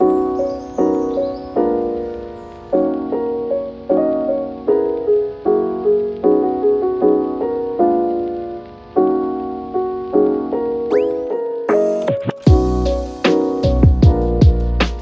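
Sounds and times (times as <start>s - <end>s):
mellow piano-like keyboard music: 0.0s - 15.0s.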